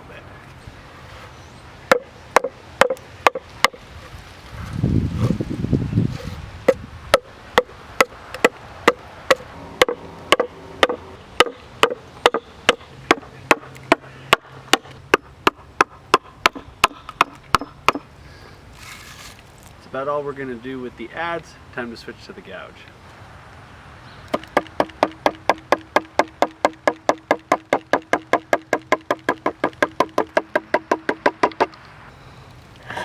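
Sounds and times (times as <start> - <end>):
low rumbling noise: 0.0 - 16.9
adze chopping wood: 1.9 - 3.8, 6.6 - 18.1, 24.3 - 31.8.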